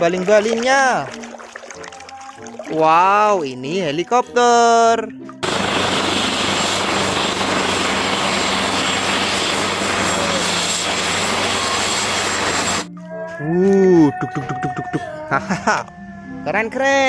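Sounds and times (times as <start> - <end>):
helicopter engine and rotor: 5.4 - 12.9.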